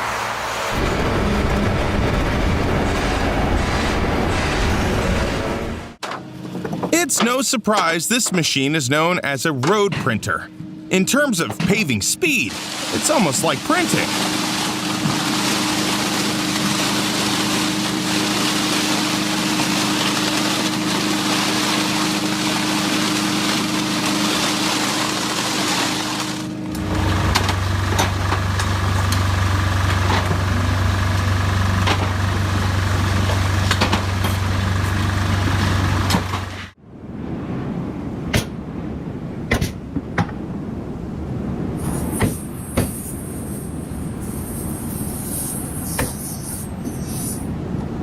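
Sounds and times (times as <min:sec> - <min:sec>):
machine deep hum: 0:00.0 - 0:06.8, 0:10.4 - 0:37.2
heavy machinery engines running: 0:00.0 - 0:36.8.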